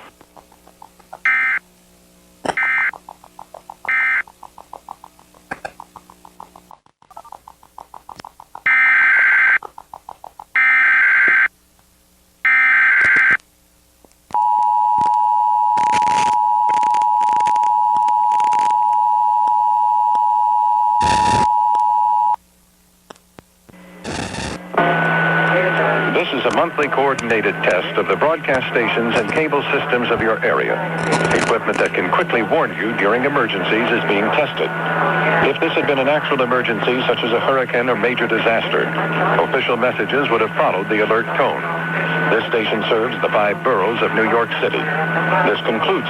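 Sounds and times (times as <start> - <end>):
buzzy data bursts: 0.0 - 11.5, 21.0 - 21.5, 24.0 - 24.7
two-tone alert signal: 1.3 - 1.6, 2.5 - 2.9, 3.9 - 4.2.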